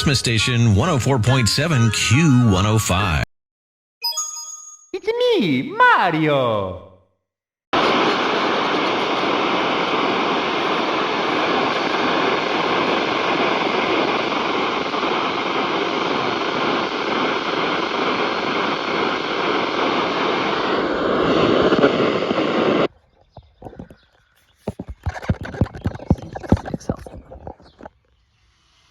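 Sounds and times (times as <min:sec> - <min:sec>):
static hiss: 0:07.8 - 0:22.9.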